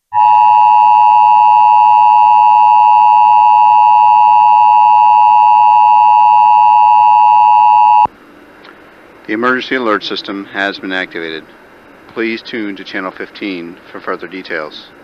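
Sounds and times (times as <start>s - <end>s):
loud steady two-tone alert signal: 0.1s - 8.1s.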